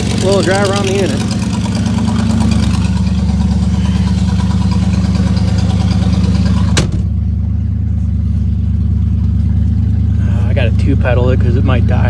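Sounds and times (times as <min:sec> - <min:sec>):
car engine idling: 0:00.0 - 0:12.0
sharp clunk: 0:06.7 - 0:07.2.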